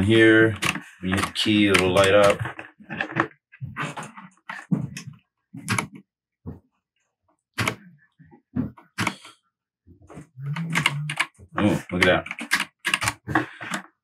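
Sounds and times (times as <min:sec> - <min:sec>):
mechanical keyboard keystrokes: 0:00.6 - 0:02.4, 0:10.7 - 0:13.9.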